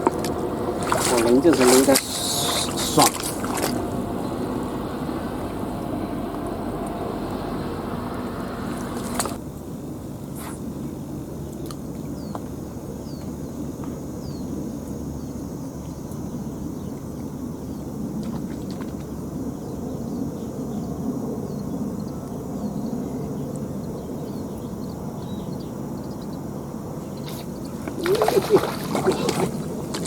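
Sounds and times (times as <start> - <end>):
low outdoor rumble: 0.0 - 10.2.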